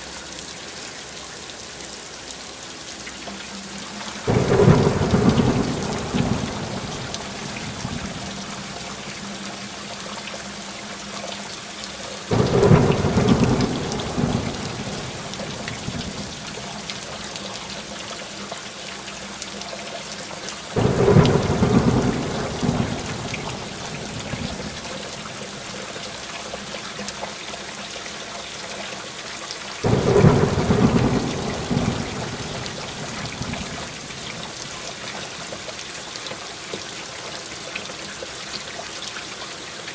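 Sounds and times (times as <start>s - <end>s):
steady rain: 0.0s - 39.9s
thunder rumbling: 4.3s - 8.8s, 12.3s - 16.9s, 20.8s - 25.4s, 29.8s - 34.5s.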